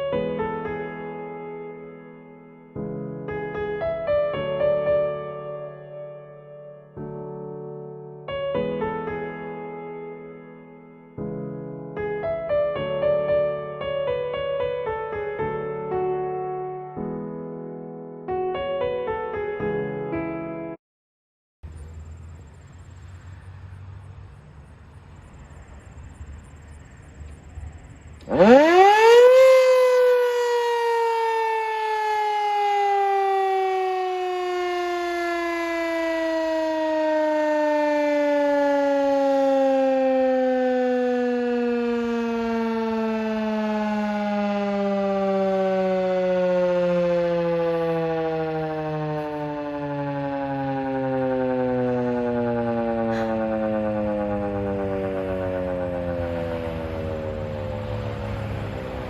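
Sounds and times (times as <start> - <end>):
warning siren winding: 28.2 - 45.0.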